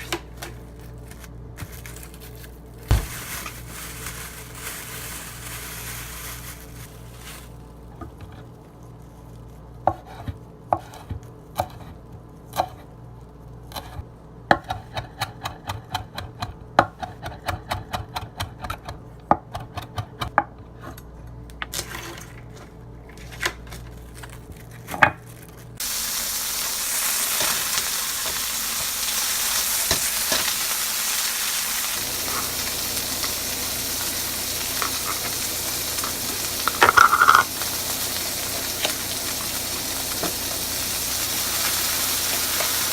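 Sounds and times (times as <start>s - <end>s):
food sizzling in a pan: 2.9s - 7.6s, 25.8s - 42.9s
kitchen utensils clicking: 36.0s - 37.5s.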